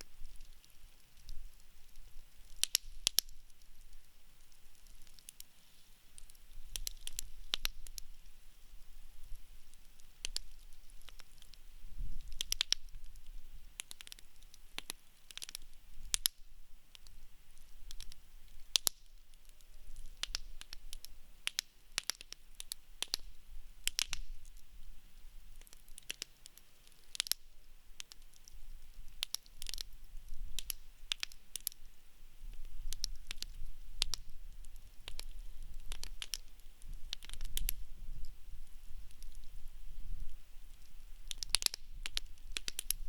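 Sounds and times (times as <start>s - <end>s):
campfire crackling and popping: 0.0s - 43.0s
low rumble of flames: 6.0s - 26.2s, 26.8s - 43.0s.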